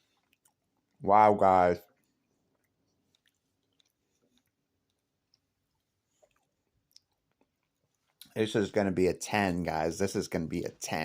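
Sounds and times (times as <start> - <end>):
person chewing food: 0.0 - 1.0, 1.9 - 8.4.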